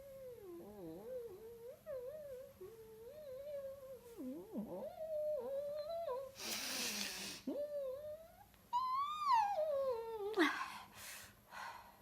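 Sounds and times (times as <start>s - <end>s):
person humming: 0.0s - 10.5s
breathy hiss: 6.3s - 7.5s.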